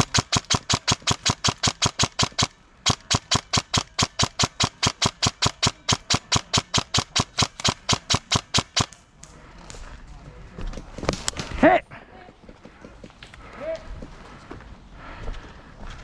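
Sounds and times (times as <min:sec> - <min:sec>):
airsoft gun firing full auto: 0:00.0 - 0:09.0.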